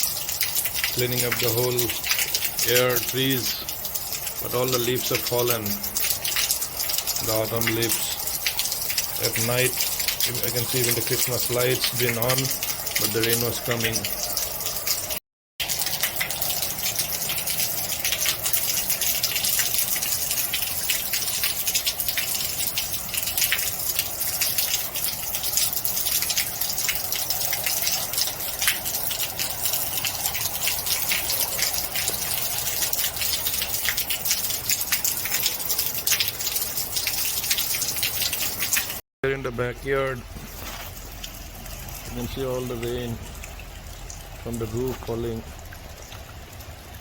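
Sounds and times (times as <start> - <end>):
heavy rain falling: 0.0 - 39.0
sharp drips splashing: 0.0 - 39.0, 40.2 - 47.0
water gushing: 0.0 - 39.0, 39.8 - 47.0.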